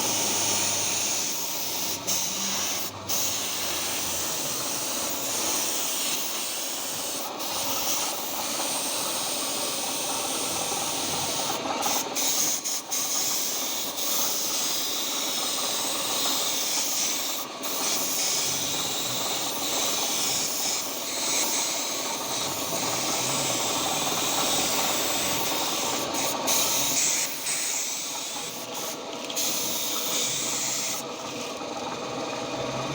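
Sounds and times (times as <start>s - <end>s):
compressor motor hum: 0.0s - 32.9s.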